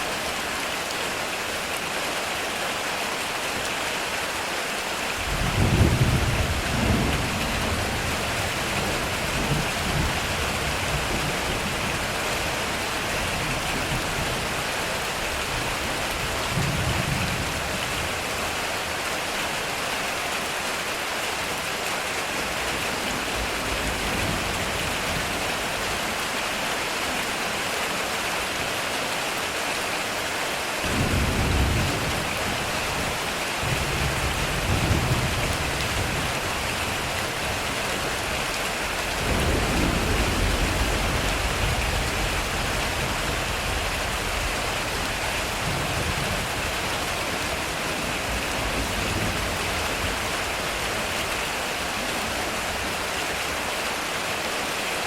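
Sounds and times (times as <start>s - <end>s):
heavy rain on a metal roof: 0.0s - 55.0s
thunder rumbling: 5.2s - 12.2s, 30.8s - 52.9s.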